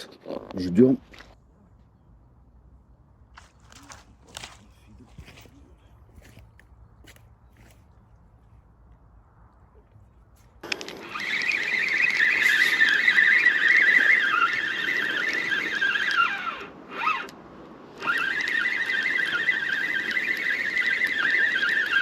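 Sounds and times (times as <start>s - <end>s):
fishing reel whirring: 10.6s - 17.4s, 18.0s - 22.0s.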